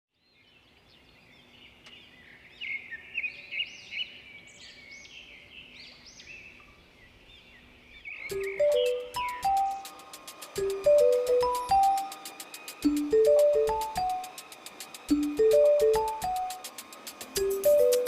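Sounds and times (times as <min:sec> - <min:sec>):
birds chirping: 0:00.2 - 0:18.0
music: 0:08.3 - 0:18.0.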